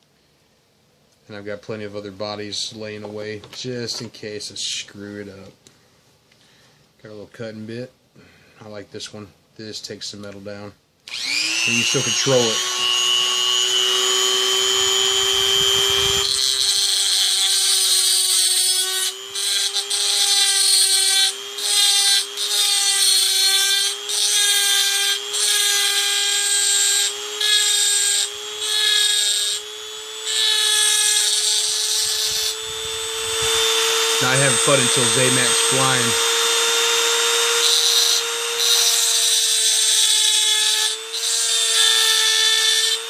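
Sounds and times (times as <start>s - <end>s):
bit grinding into metal: 11.1s - 43.0s
rotary tool motor whining: 11.1s - 43.0s.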